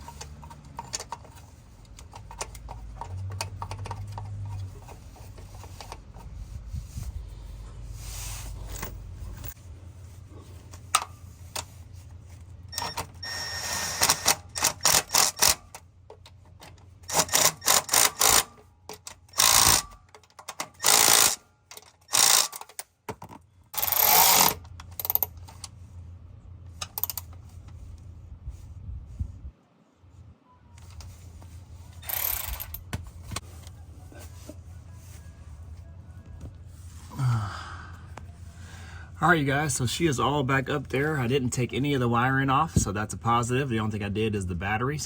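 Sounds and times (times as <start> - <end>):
steady low hum: 0.0 - 18.2, 23.5 - 45.0
ratchet wrench clicking: 12.8 - 15.8, 17.1 - 22.8, 23.8 - 25.3, 26.8 - 27.3, 32.0 - 32.8.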